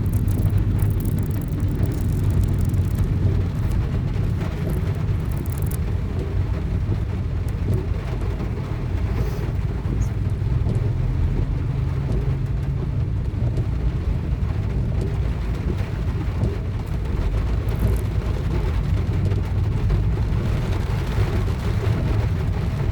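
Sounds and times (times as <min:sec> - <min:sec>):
rain falling on a car: 0:00.0 - 0:22.9
raindrops ticking: 0:00.0 - 0:22.9.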